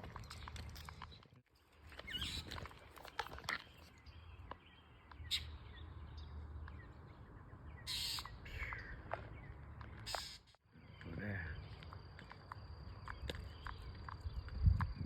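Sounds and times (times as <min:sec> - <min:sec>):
birds chirping: 0:00.0 - 0:15.0.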